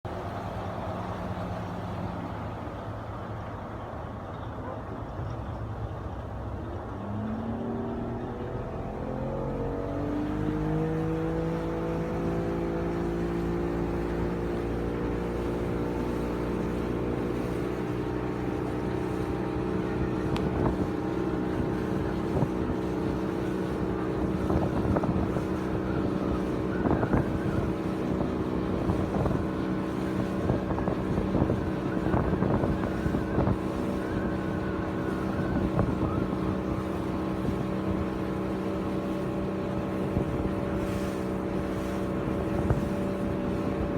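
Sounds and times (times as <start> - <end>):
boat engine running: 0.0 - 43.9
water slapping against hull: 10.8 - 43.9.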